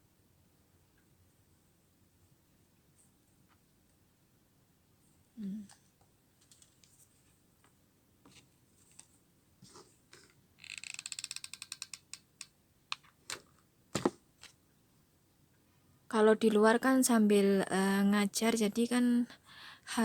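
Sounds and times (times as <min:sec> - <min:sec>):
rapid ratcheting clicks: 0:10.6 - 0:13.1.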